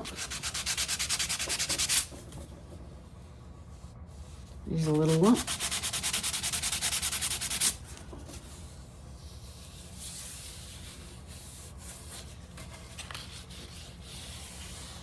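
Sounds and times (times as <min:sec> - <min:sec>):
sandpaper rubbing on wood: 0:05.0 - 0:07.8.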